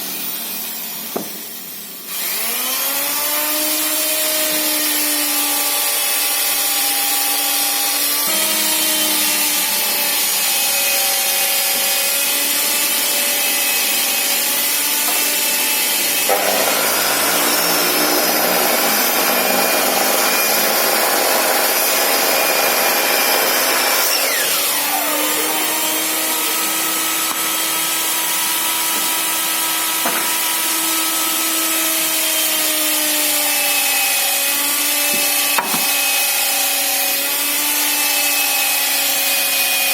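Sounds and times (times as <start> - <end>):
saw blade cutting wood: 1.0 - 39.9
miter saw motor whine: 2.1 - 4.9, 6.4 - 28.8.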